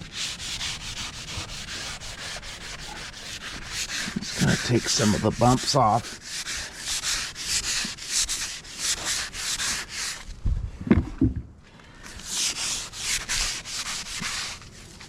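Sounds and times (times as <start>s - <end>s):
hand tool scraping wood: 0.0s - 10.3s, 12.0s - 15.0s
low thumps: 10.5s - 11.6s.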